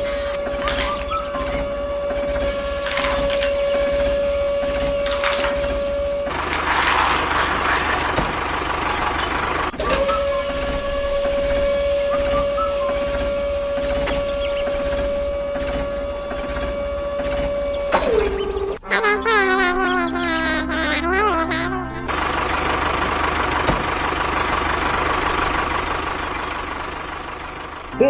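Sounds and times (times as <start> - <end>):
hissing noise: 0.0 - 0.7
small electric motor whining: 0.0 - 18.8.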